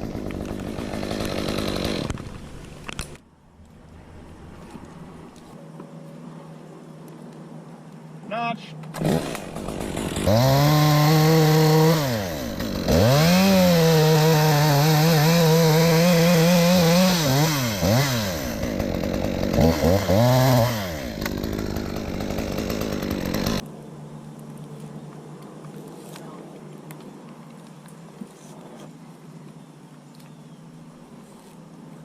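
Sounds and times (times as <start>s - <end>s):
chainsaw revving: 0.0s - 2.2s, 9.0s - 23.6s.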